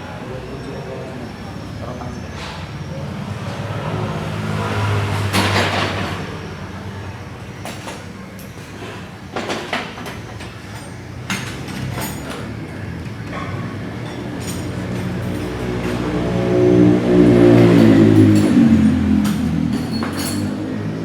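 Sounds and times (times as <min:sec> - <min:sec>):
metallic knocks and clanks: 0:09.3 - 0:12.6, 0:13.2 - 0:21.0.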